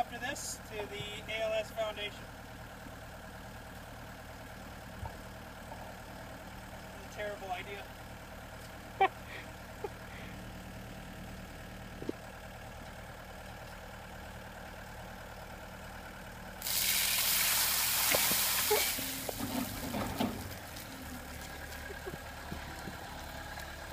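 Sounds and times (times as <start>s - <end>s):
engine idling: 0.0s - 23.9s
rush of poured water: 16.6s - 19.3s.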